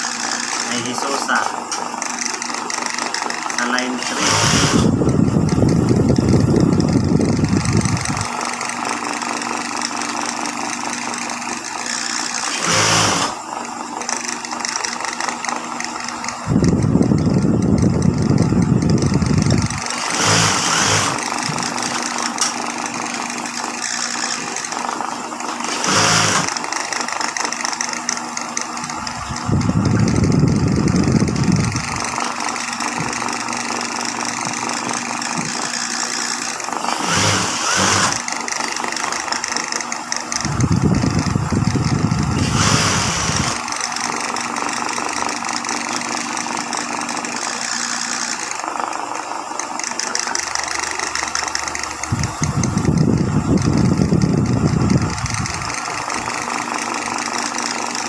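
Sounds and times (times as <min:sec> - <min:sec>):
sewing machine stitching: 0:00.0 - 0:58.0
steady machine hum: 0:00.0 - 0:58.0.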